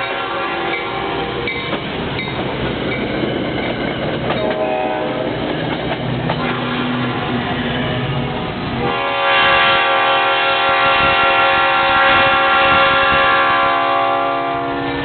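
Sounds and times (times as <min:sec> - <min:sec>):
train air horn chord: 0:00.0 - 0:01.3, 0:04.4 - 0:05.4, 0:06.4 - 0:07.3, 0:08.8 - 0:15.0
train running noise: 0:00.0 - 0:15.0.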